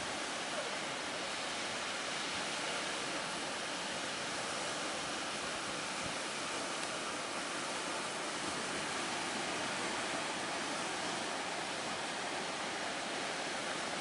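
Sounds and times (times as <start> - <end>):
sea waves: 0.0 - 14.0
wind: 0.0 - 14.0.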